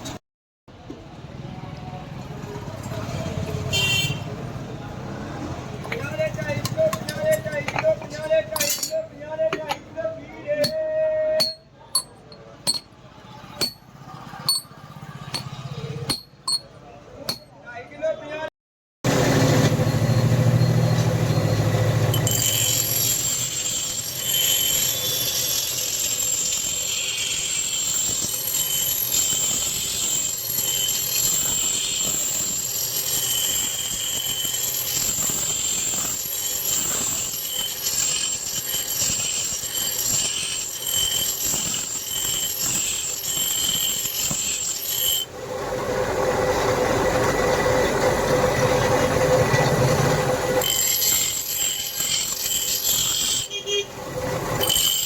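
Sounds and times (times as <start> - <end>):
grinder squealing on steel: 19.2 - 55.0.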